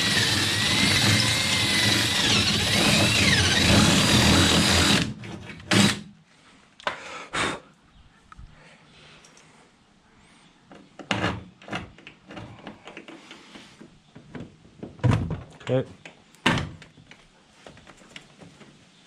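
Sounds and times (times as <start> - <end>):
power drill whining: 0.0 - 6.1.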